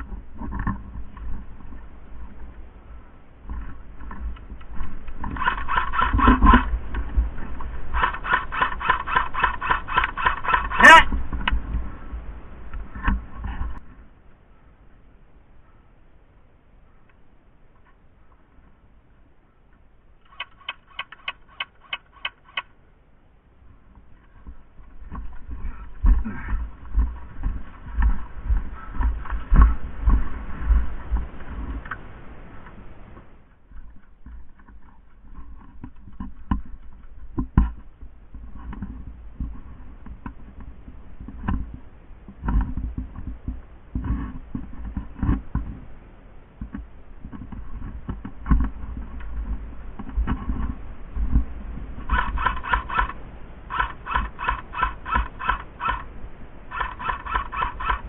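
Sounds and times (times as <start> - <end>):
handling thumps and clicks: 46.6 - 53.2.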